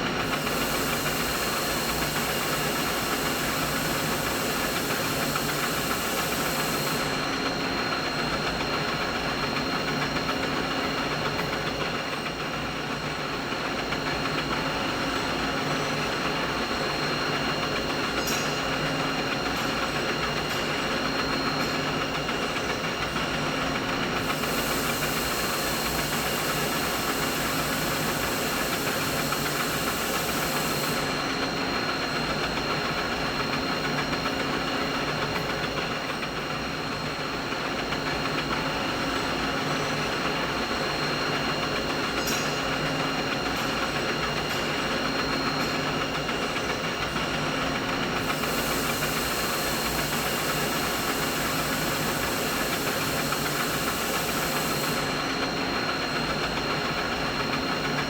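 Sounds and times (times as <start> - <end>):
machinery drone with whine: 0.0 - 9.8, 14.2 - 34.3, 38.2 - 58.0
bright hiss: 0.3 - 7.1, 24.2 - 31.1, 48.2 - 55.2.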